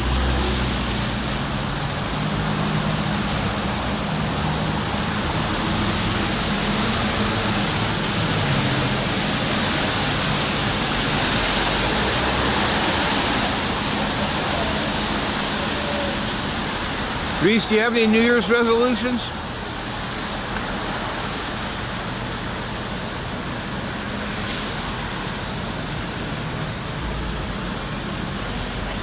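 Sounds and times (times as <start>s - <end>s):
rain falling: 0.0s - 29.0s.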